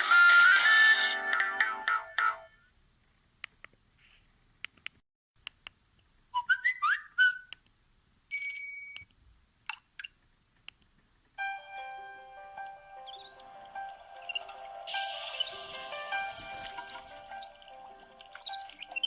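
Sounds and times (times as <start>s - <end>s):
short steady beep: 8.3s - 9.1s
chirping whistle-like glides: 14.2s - 16.7s.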